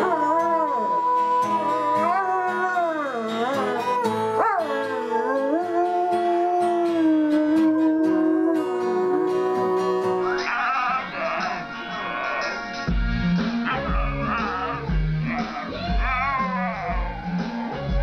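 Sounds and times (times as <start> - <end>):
dog howling: 0.0 - 12.6, 13.7 - 18.0
music with a beat: 11.2 - 18.0.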